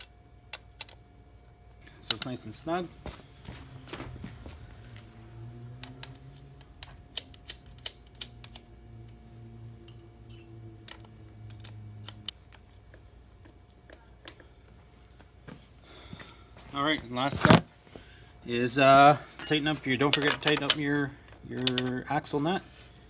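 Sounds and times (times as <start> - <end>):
low steady hum: 0.0 - 23.0
sharp metal clicks of tools: 5.8 - 9.2, 9.8 - 12.4.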